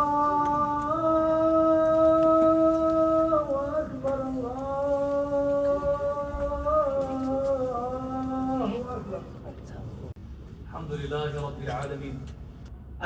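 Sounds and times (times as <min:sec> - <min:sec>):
person chanting held notes: 0:00.0 - 0:09.3.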